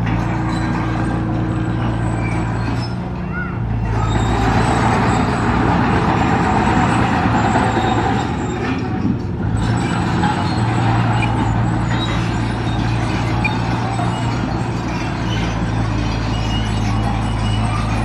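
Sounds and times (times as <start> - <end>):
diesel engine of heavy machinery: 0.0 - 18.0.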